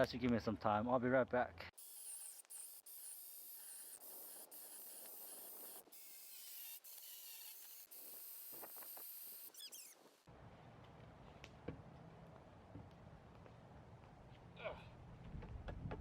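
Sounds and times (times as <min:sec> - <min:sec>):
burning wood hissing: 0:01.8 - 0:10.2.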